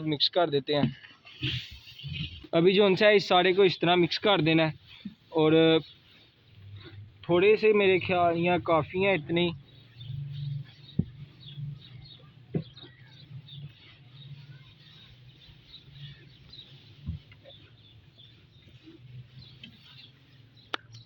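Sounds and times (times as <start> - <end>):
birds chirping faintly: 0.0 - 21.0
short soft knocks: 10.9 - 11.4.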